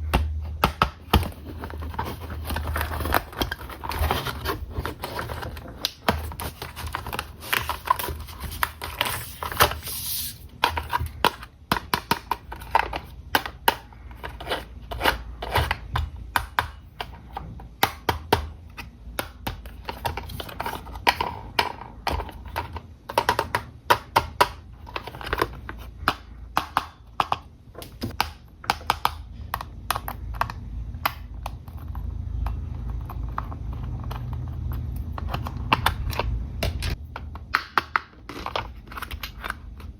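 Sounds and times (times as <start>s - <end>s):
hands handling toy packaging: 0.6s - 15.9s.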